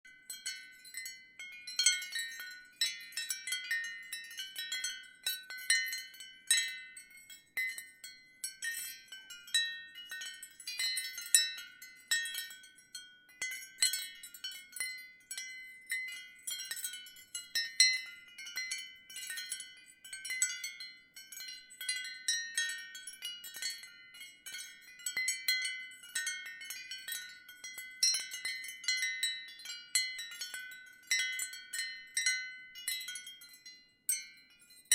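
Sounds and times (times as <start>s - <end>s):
ceramic wind chimes tinkling: 0.0s - 34.9s.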